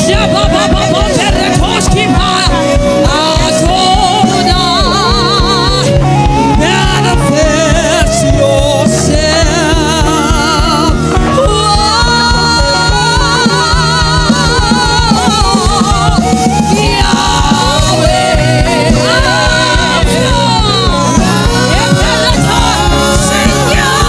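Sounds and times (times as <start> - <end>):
band with drum beat: 0.0 - 24.0
gospel singing: 0.0 - 24.0.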